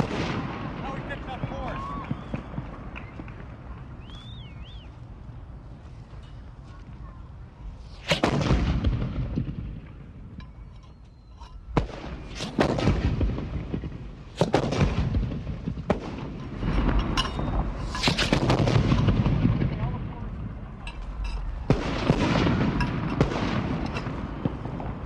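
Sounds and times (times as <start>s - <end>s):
rolling echo: 0.0s - 25.0s
rifle shots: 8.0s - 9.6s, 11.8s - 20.2s, 21.6s - 25.0s.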